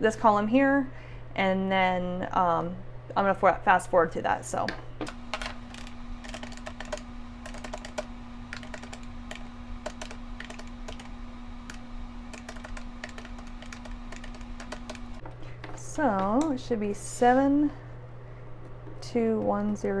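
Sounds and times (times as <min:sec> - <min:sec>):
steady low hum: 0:00.0 - 0:20.0
keys tapped rapidly: 0:05.0 - 0:15.2.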